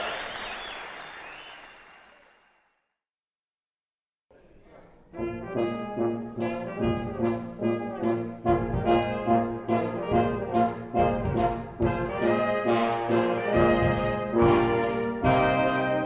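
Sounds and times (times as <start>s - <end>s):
brass band playing: 5.1s - 16.0s.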